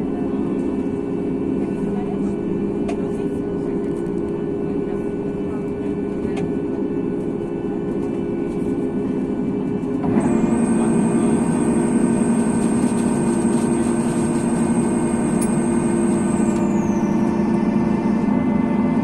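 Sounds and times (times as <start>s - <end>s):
aircraft cabin engine hum: 0.0s - 19.0s
high whine: 10.2s - 19.0s.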